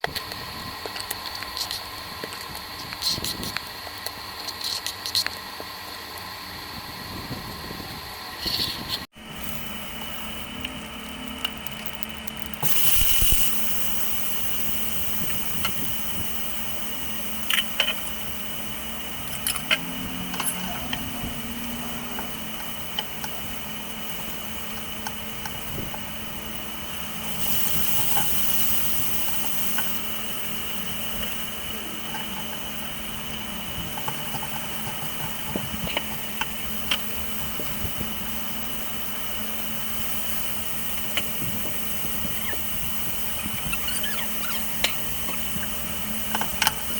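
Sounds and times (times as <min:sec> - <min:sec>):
machine hum: 0:05.6 - 0:46.9
hiss: 0:12.6 - 0:46.9.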